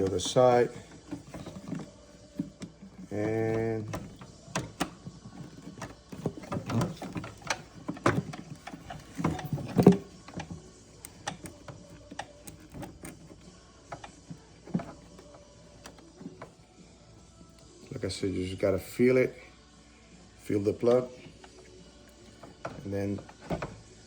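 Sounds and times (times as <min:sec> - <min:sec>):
plastic clicks and knocks: 0:00.0 - 0:16.6, 0:22.2 - 0:23.8.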